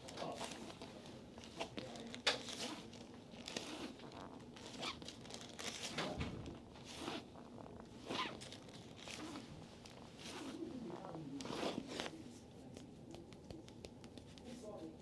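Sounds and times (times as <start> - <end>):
hands rubbing over skin and fabric: 6.8 - 15.0.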